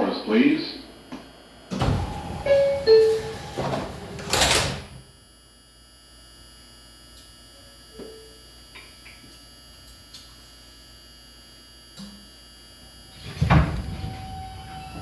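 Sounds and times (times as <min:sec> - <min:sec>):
low train car hum: 0:00.0 - 0:05.2
doors sliding shut: 0:00.9 - 0:05.0, 0:13.1 - 0:15.0
two-tone door chime: 0:02.3 - 0:04.7.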